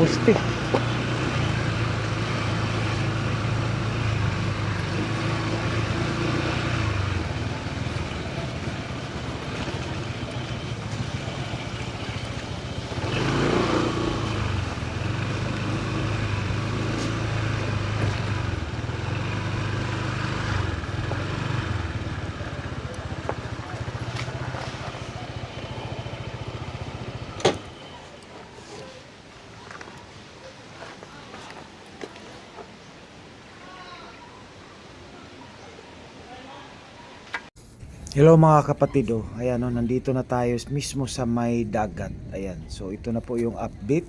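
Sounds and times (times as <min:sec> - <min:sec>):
vehicle engine running: 0:00.0 - 0:27.4, 0:37.6 - 0:44.0
road noise: 0:00.0 - 0:44.0.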